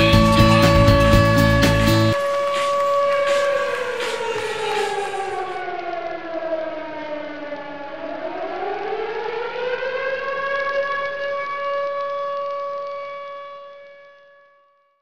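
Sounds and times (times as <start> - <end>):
siren-like pitched tone: 0.0 - 10.9.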